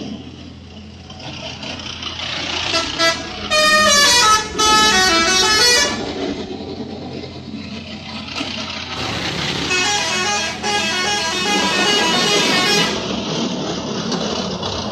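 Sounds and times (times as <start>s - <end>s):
bus musical horn playing tune: 2.7s - 6.3s, 9.0s - 13.2s.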